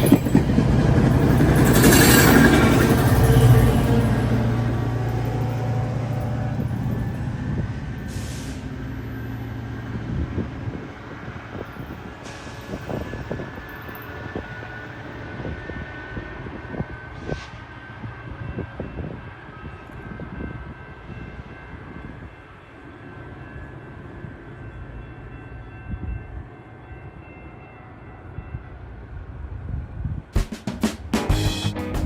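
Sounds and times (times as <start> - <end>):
wheels knocking: 0.0 - 4.0
train rumbling on rails: 0.0 - 31.2.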